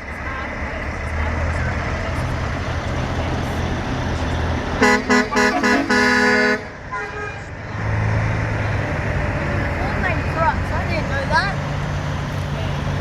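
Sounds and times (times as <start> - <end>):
low engine rumble: 0.0 - 13.0
truck horn blasts: 4.8 - 7.5.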